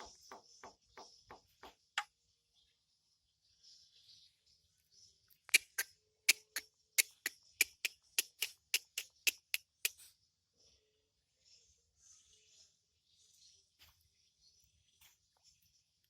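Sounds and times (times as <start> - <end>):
faint high bird chatter: 0.0 - 16.0
bird making sharp clicks: 5.5 - 10.1.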